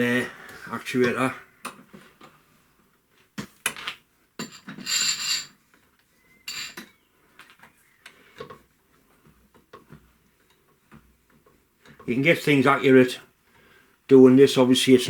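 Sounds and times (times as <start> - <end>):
metal clinks and scrapes: 4.4 - 5.6, 6.4 - 7.0.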